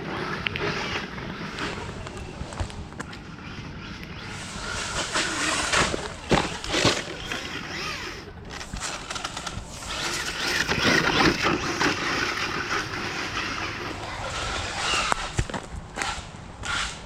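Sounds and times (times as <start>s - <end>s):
gritty tyre and drivetrain noise: 0.0s - 17.0s
toy car motor whining: 3.5s - 17.0s.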